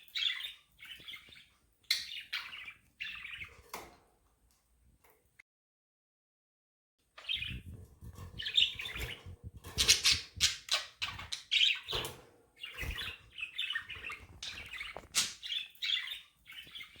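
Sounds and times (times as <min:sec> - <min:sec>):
budgerigars chirping and chattering: 0:00.0 - 0:03.6, 0:07.2 - 0:17.0.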